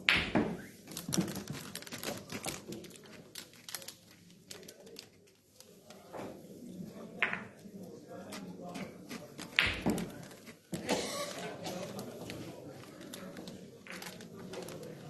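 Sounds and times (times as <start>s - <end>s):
billiard balls clicking: 8.3s - 10.8s.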